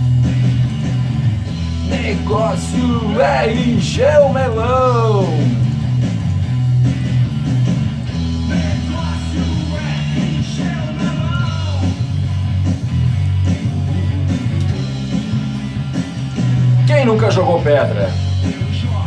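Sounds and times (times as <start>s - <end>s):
bass line: 0.0s - 19.0s
rock song with guitar: 0.0s - 19.0s
person singing: 1.9s - 5.6s.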